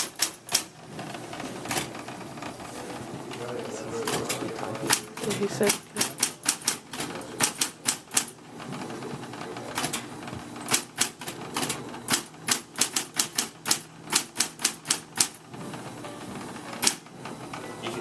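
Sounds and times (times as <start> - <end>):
typewriter keys clacking: 0.0 - 2.0, 3.4 - 8.4, 9.7 - 15.6, 16.6 - 18.0.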